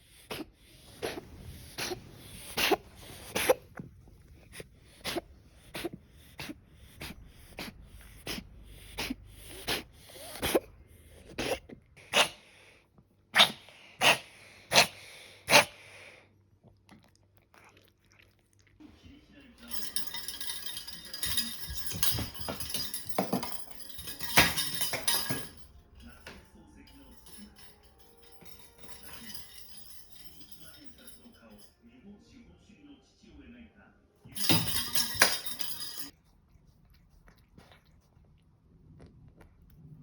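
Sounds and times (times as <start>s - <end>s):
cat coughing: 0.3s - 3.9s, 4.9s - 12.5s, 13.4s - 15.8s.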